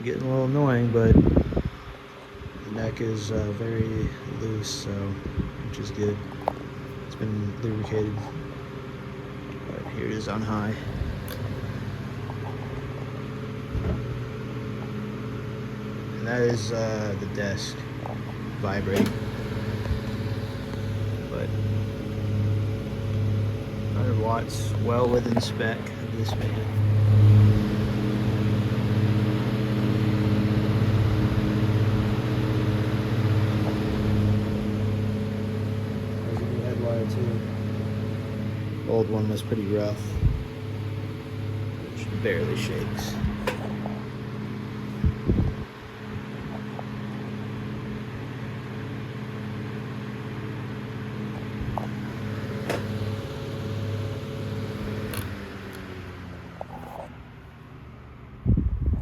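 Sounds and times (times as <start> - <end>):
table fan running: 0.0 - 59.0
desk vibrating: 6.1 - 44.2.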